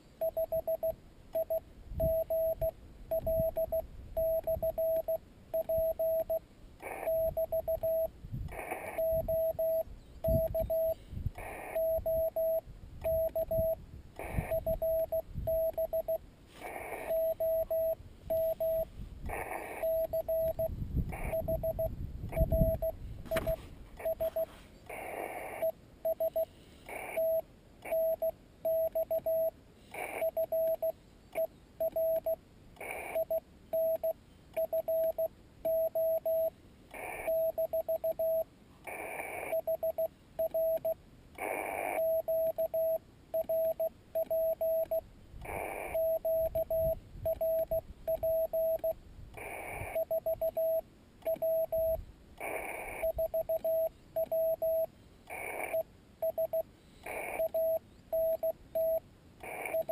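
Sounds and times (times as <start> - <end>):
morse code tone: 0.2 - 32.4, 33.0 - 38.5, 39.4 - 59.9
bursts of hiss: 16.4 - 17.2.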